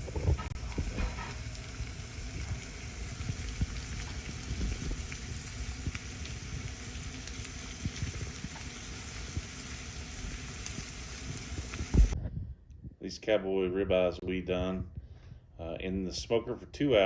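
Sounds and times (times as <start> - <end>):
steaks sizzling on griddle: 0.0 - 12.2
low uneven rumble: 0.0 - 16.2.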